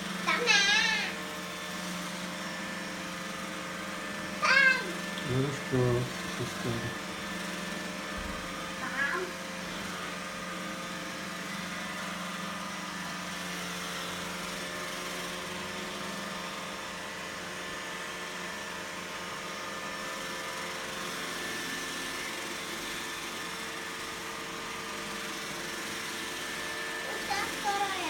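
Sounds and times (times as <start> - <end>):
robot vacuum whirring: 25.5 - 28.0.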